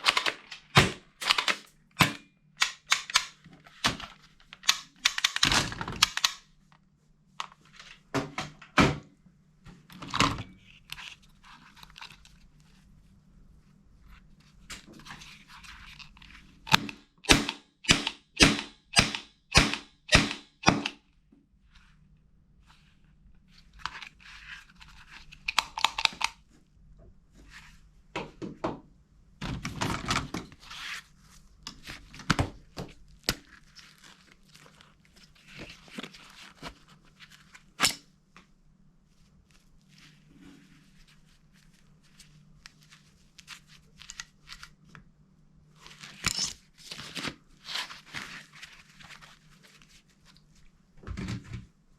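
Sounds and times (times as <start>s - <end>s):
rustling handling noises: 3.2s - 8.1s, 9.6s - 16.8s, 21.4s - 28.1s, 29.5s - 51.9s.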